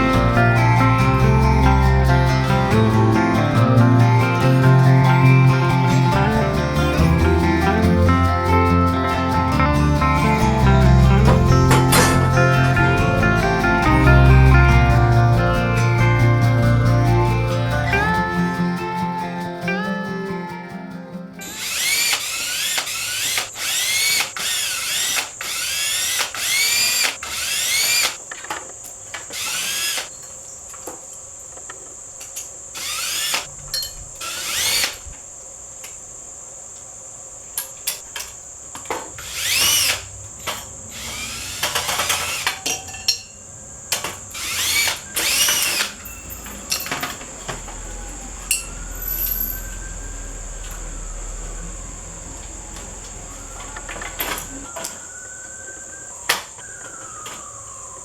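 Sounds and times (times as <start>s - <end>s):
power drill whining in bursts: 8.5s - 15.0s, 21.4s - 30.5s, 32.2s - 35.3s, 37.9s - 58.0s.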